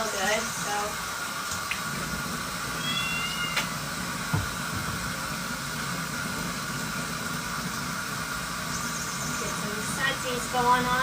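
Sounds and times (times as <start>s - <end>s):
kitten mewing: 2.8s - 3.7s
soft knock: 4.3s - 4.9s.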